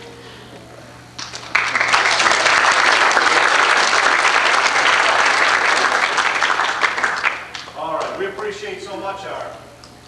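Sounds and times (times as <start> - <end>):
congregation applauding: 1.2 - 8.6.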